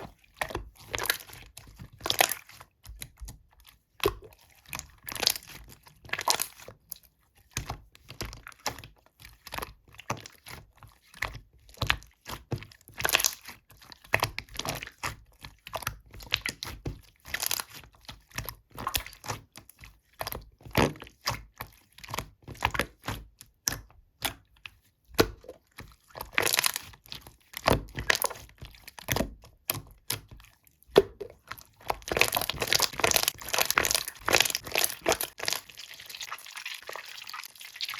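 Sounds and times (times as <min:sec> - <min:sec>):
slime squished by hand: 0:04.0 - 0:06.7, 0:16.2 - 0:24.5, 0:25.1 - 0:37.9.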